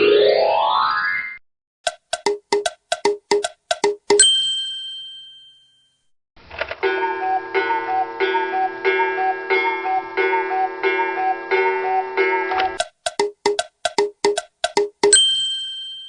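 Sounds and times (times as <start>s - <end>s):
quick ticks: 1.9s - 4.2s, 12.8s - 15.1s
bell-like ding: 4.1s - 6.1s, 15.1s - 16.0s.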